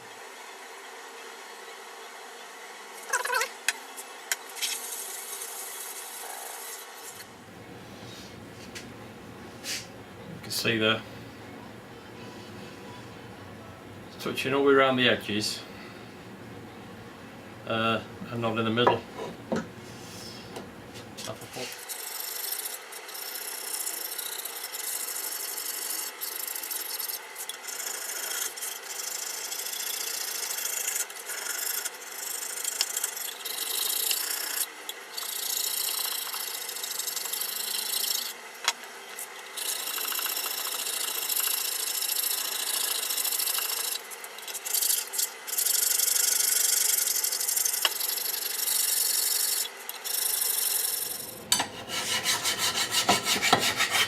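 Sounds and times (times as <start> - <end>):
hand file scraping metal: 51.5 - 54.0.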